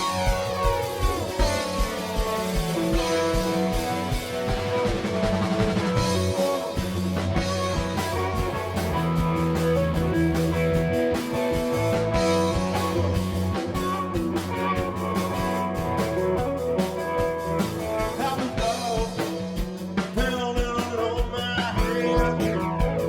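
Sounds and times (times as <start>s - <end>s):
drum hits: 0.0s - 16.5s
bass guitar: 0.0s - 23.0s
distorted electric guitar: 0.0s - 23.0s.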